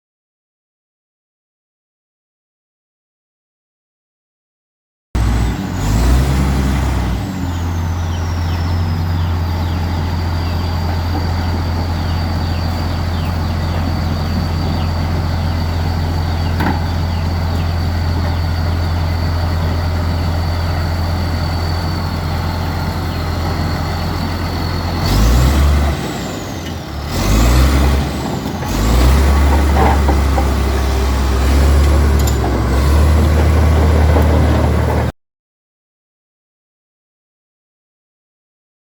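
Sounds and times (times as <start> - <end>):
bulldozer diesel engine with whine: 5.2 - 35.2.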